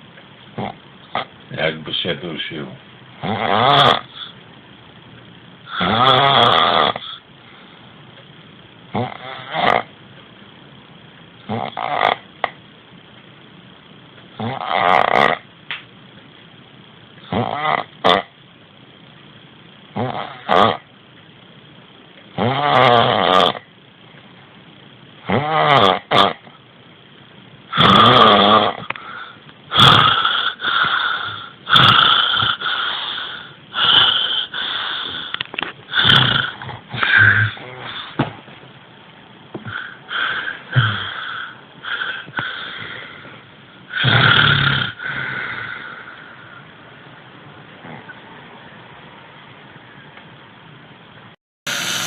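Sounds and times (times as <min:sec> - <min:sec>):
person snoring: 0:03.2 - 0:04.4, 0:05.7 - 0:07.2, 0:08.9 - 0:09.9, 0:11.5 - 0:12.2, 0:14.4 - 0:15.4, 0:17.2 - 0:18.3, 0:22.4 - 0:23.6, 0:25.2 - 0:26.4, 0:27.7 - 0:38.2, 0:39.7 - 0:43.0, 0:43.9 - 0:46.0.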